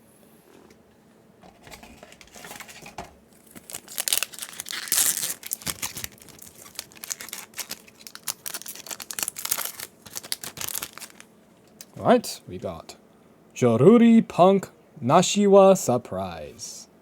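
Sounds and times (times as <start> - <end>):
foil wrapper crinkling and tearing: 2.2 - 11.9.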